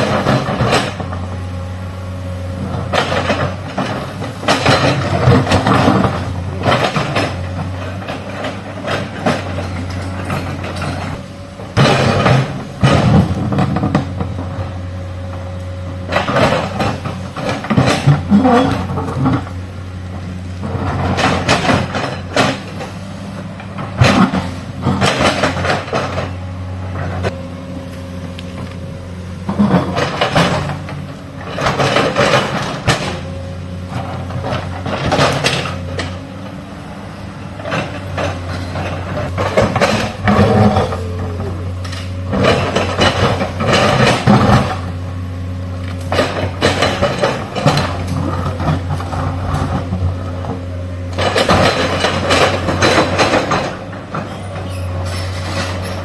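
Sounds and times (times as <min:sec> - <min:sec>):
excavator diesel engine running: 0:00.0 - 0:56.0
bucket scraping and clattering: 0:29.4 - 0:36.2.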